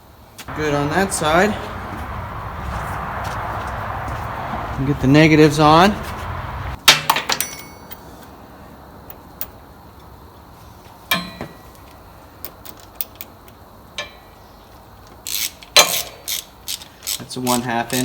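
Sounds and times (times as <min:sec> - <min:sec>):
metal tools clinking: 0:07.3 - 0:08.0.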